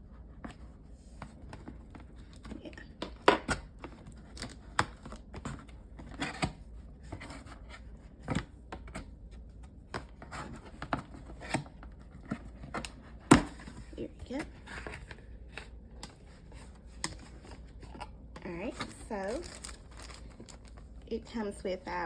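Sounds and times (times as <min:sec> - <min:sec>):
cardboard packaging being handled: 0:09.5 - 0:22.0.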